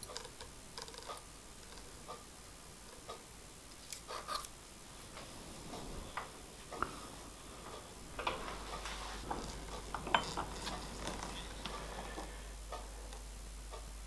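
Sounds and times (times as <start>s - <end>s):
metal tools clinking: 9.2s - 11.6s.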